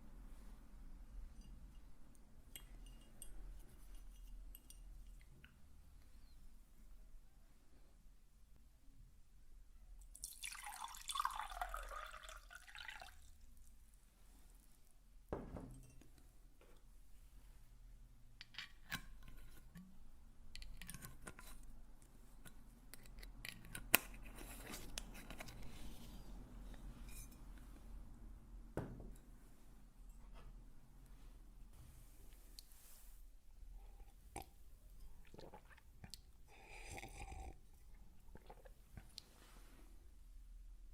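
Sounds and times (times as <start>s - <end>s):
soft handling noise: 14.1s - 33.7s.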